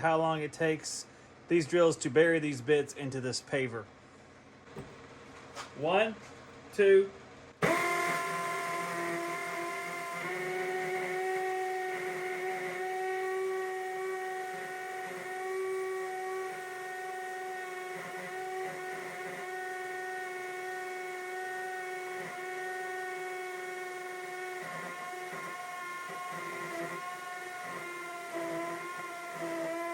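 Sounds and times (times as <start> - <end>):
hammer drills boring into concrete: 7.6 - 29.9.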